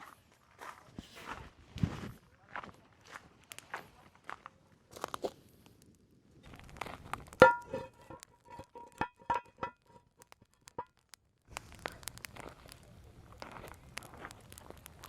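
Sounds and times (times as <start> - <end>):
hard objects clinking together: 7.2 - 10.9.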